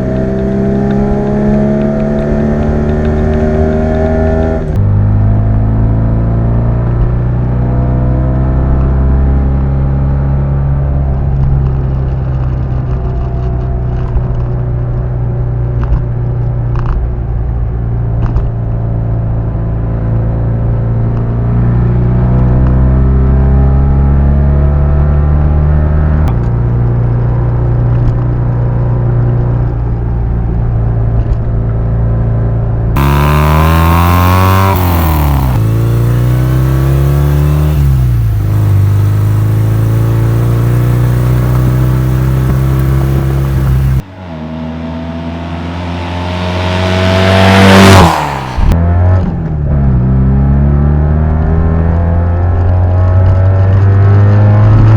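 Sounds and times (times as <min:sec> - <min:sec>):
two-cylinder car engine revving: 0:00.0 - 0:14.8, 0:30.7 - 0:54.9.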